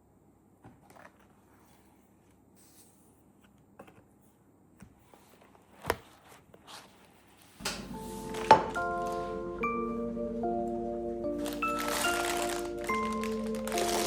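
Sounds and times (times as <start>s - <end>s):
soft music with chime-like notes: 7.6s - 14.0s.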